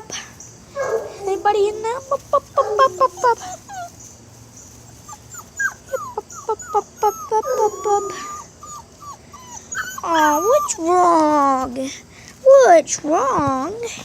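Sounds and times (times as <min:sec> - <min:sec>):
puppies whimpering and yelping: 0:01.2 - 0:11.6.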